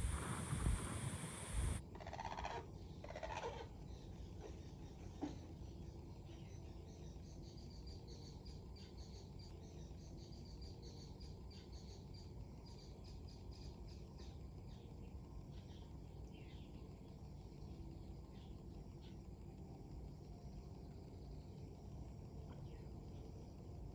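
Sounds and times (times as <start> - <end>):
low rumble of strong wind: 0.0 - 1.8.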